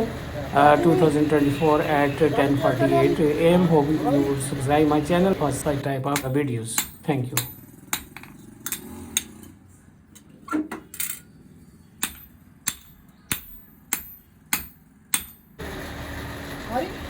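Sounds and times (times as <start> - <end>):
hammer ringing on anvil: 6.1 - 9.3, 12.0 - 15.6.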